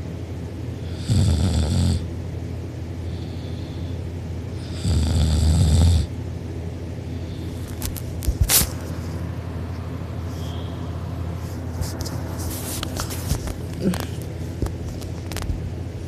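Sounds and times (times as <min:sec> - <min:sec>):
person snoring: 0:00.8 - 0:02.0, 0:04.6 - 0:06.1.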